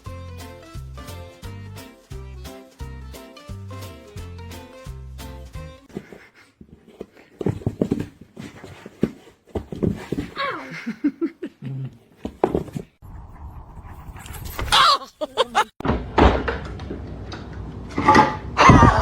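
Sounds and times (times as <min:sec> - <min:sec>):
dog panting: 0:13.0 - 0:14.7.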